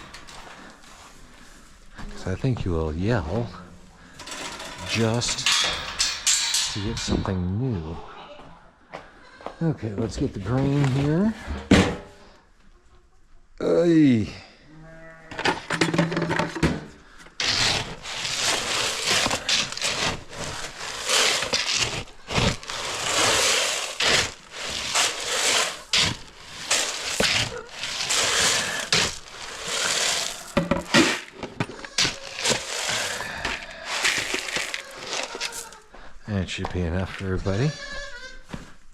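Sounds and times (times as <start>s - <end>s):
grain pouring: 4.2s - 5.5s, 17.4s - 35.8s.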